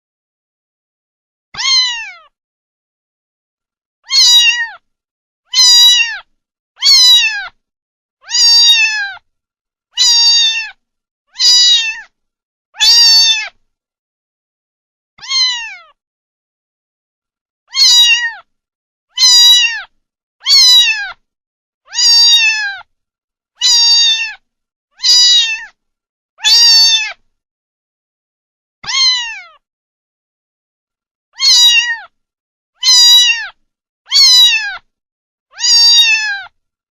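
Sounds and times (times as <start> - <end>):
kitten meowing: 1.6 - 2.3, 4.1 - 4.8, 5.5 - 7.6, 8.2 - 9.2, 10.0 - 12.1, 12.8 - 13.6, 15.2 - 16.0, 17.7 - 18.5, 19.2 - 21.2, 21.9 - 22.9, 23.6 - 24.4, 25.0 - 25.8, 26.4 - 27.2, 28.8 - 29.6, 31.4 - 32.1, 32.8 - 34.9, 35.5 - 36.6.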